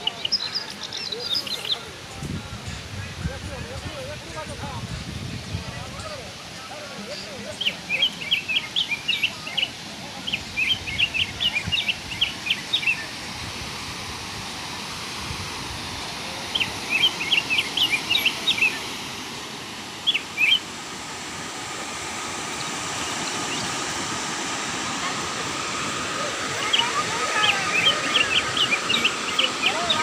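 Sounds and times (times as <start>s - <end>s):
waterfall rushing: 0.0s - 30.0s
bird chirping: 20.0s - 20.6s.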